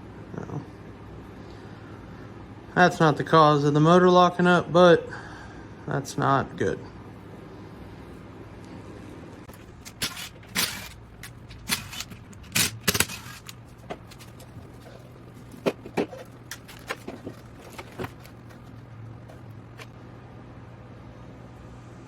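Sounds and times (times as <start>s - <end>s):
steady low hum: 0.0s - 22.0s
metallic clicks of hand tools: 9.5s - 13.6s.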